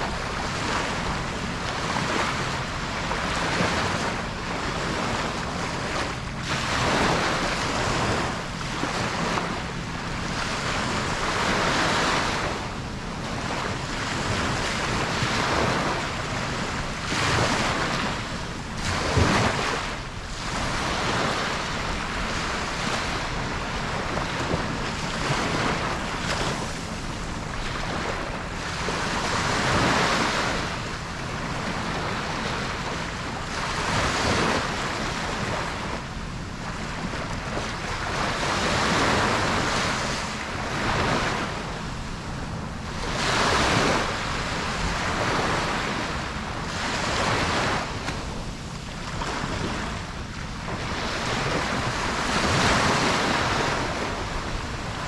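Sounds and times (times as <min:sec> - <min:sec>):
ocean waves breaking on beach: 0:00.0 - 0:55.0.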